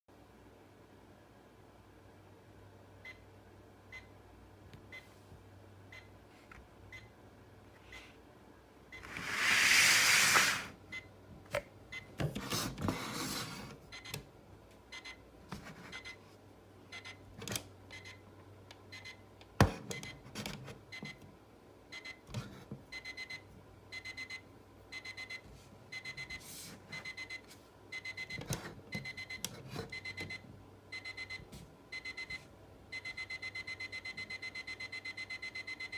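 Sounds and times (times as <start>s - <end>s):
loud hissing burst: 9.1s - 10.7s
alarm clock beeping: 18.9s - 19.2s, 21.9s - 22.2s, 22.9s - 26.4s, 27.0s - 35.9s.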